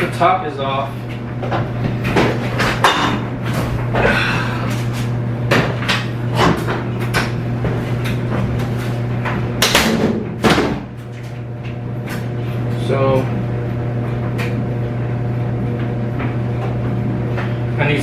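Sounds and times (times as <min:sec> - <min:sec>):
clothes dryer humming: 0:00.0 - 0:18.0
washing machine panel clunks: 0:09.2 - 0:11.0.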